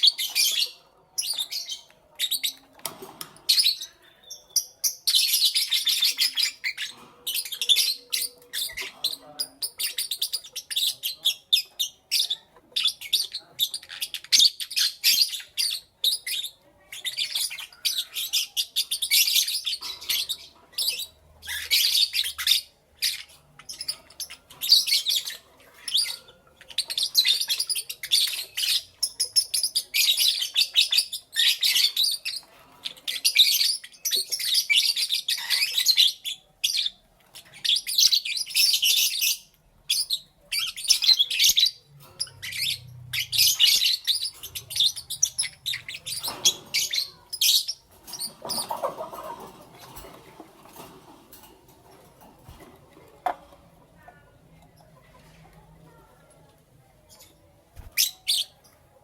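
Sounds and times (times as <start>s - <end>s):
lovebirds chirping: 0.0s - 59.0s.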